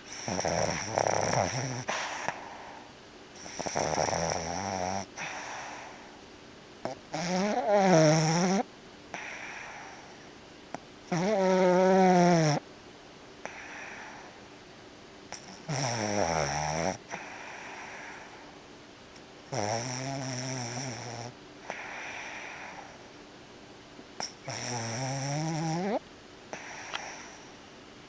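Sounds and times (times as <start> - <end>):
dog snoring: 0.0 - 2.8, 3.4 - 6.1, 6.8 - 10.2, 11.1 - 12.6, 13.4 - 14.4, 15.3 - 18.4, 19.5 - 23.0, 24.2 - 27.5
soft breathy sounds: 0.0 - 3.8, 5.0 - 6.3, 9.1 - 10.4, 13.4 - 14.6, 17.0 - 18.6, 21.6 - 23.2, 25.9 - 27.6.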